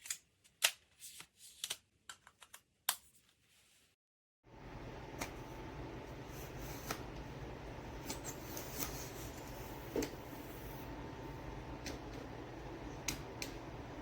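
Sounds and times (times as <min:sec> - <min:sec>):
steady low hum: 0:04.5 - 0:14.0.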